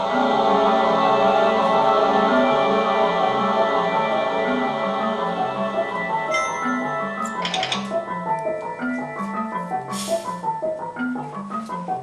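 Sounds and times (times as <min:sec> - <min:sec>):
slow dance accompaniment music: 0:00.0 - 0:12.0
bright struck note ringing: 0:06.3 - 0:07.5.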